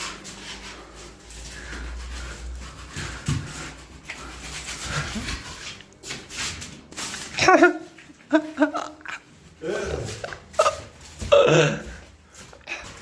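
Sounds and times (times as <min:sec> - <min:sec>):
hand scraping a wall: 0:00.0 - 0:13.0.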